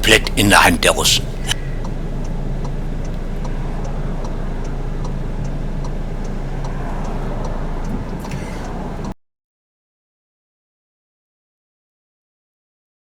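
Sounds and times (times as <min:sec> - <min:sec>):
car driving rumble: 0:00.0 - 0:09.2
regular ticking: 0:00.0 - 0:09.2.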